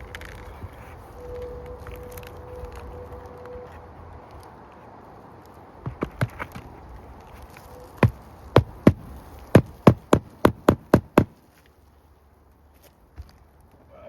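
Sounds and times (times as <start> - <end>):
hammer striking nails: 8.0 - 11.4.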